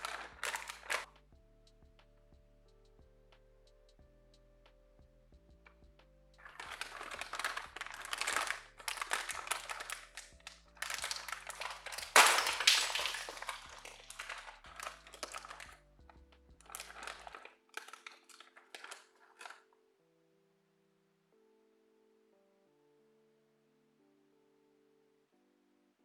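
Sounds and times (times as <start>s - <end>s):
plastic clicking and clattering: 0.0s - 1.1s, 6.4s - 15.8s, 16.6s - 19.6s
quiet background music: 0.0s - 26.0s.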